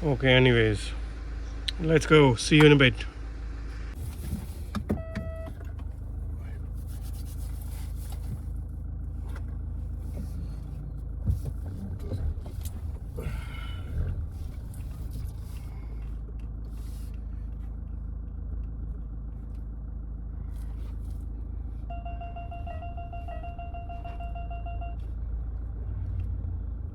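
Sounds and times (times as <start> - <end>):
car cabin rumble: 0.0 - 26.9
steady high tone: 21.9 - 25.0.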